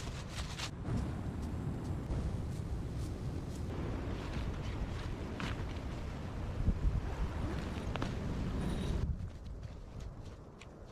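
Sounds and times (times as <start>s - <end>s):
footsteps crunching in snow: 0.0s - 6.2s
wind rumble: 0.0s - 10.9s.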